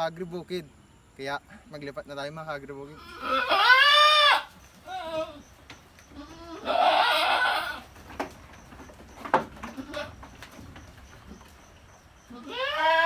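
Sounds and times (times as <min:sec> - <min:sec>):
goat bleating: 0:03.0 - 0:05.5, 0:06.1 - 0:07.9, 0:09.6 - 0:10.2, 0:12.3 - 0:13.0.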